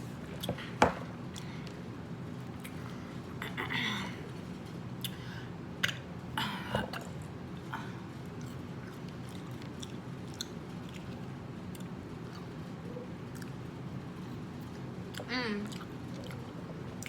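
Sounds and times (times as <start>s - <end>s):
person chewing food: 7.8s - 17.0s.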